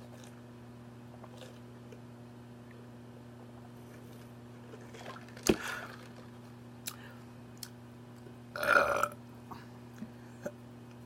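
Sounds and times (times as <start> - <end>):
woman burping: 8.6 - 9.2.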